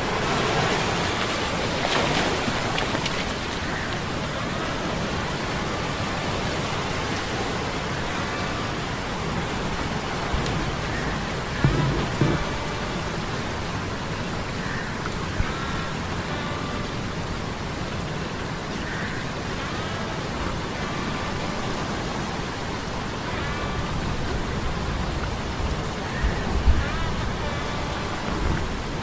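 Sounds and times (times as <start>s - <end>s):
rain and storm: 0.0s - 29.0s
thunder thumps: 11.5s - 12.8s.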